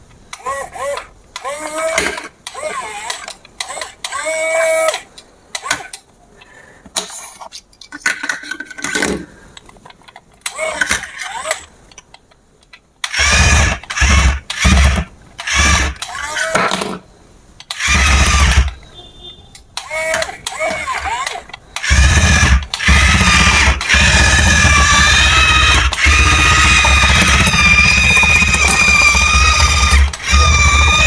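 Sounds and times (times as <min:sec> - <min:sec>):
small electric toy motor: 0:13.1 - 0:16.5, 0:17.7 - 0:18.8, 0:19.8 - 0:31.0.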